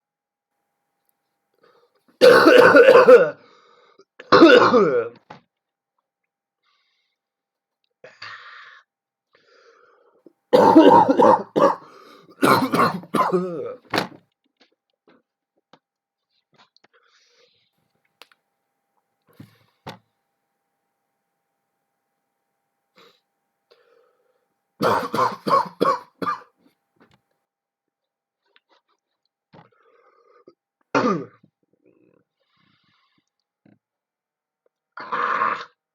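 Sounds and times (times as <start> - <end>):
person coughing: 2.2 - 3.4, 4.2 - 5.2, 10.6 - 13.8, 24.8 - 26.5, 31.0 - 31.4.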